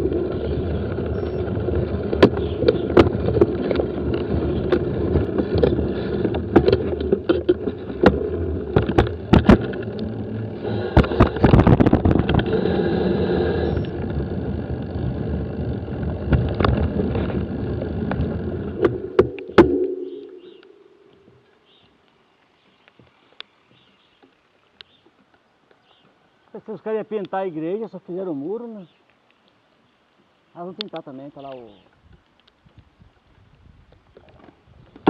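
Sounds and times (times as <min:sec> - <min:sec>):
bike knocking and rattling: 0:00.0 - 0:12.6, 0:13.9 - 0:19.8
bicycle tyres rumbling: 0:00.0 - 0:21.3
wind: 0:00.0 - 0:35.0.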